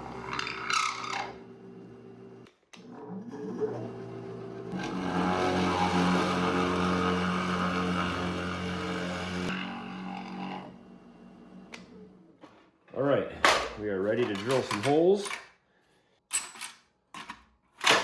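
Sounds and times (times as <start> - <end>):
power tool motor running: 0.0 - 2.4, 3.8 - 11.7.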